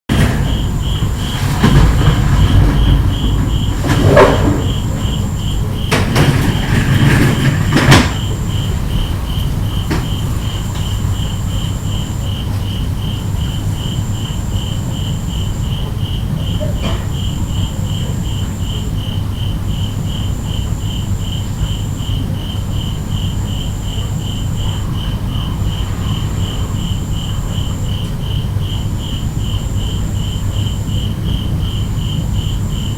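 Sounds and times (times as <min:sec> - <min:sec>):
sliding shutters rolling on track: 0:00.1 - 0:19.8
high insect trill: 0:00.1 - 0:32.9
rapid pulsed insect chirp: 0:00.1 - 0:32.9.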